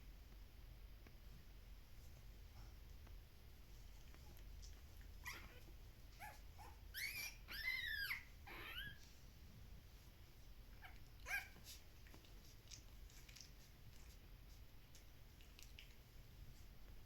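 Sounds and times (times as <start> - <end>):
puppies whimpering and squealing: 5.2 - 9.0, 10.8 - 11.6.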